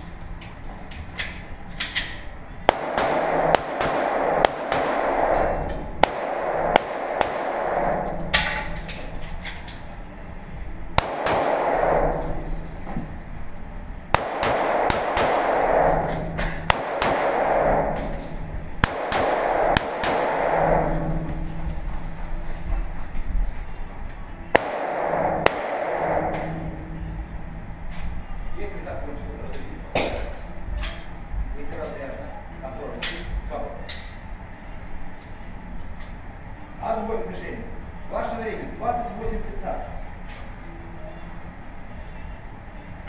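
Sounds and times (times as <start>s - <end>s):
pistol shots with ringing echo: 2.6s - 9.2s, 11.0s - 12.9s, 14.1s - 21.9s, 24.5s - 27.5s.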